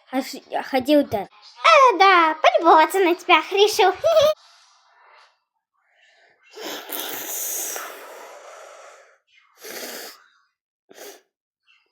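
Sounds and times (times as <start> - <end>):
man snoring: 9.6 - 10.2.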